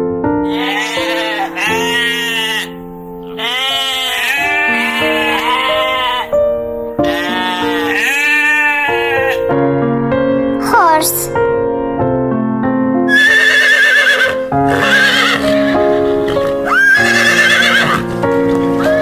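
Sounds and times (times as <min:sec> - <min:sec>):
keyboard music: 0:00.0 - 0:19.0
sheep bleating: 0:00.4 - 0:06.4, 0:07.0 - 0:09.5, 0:13.1 - 0:18.0.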